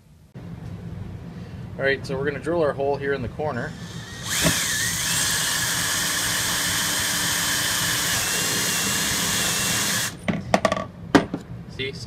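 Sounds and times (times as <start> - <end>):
power drill boring plastic: 3.7 - 10.2.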